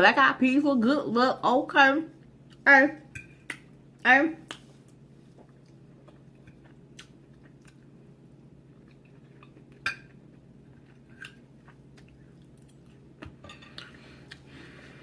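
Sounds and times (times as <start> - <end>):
person chewing food: 4.5 - 15.0.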